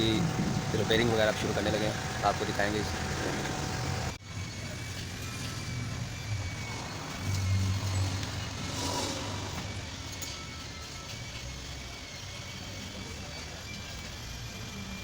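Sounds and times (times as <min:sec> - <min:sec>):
low engine hum: 0:00.0 - 0:15.0.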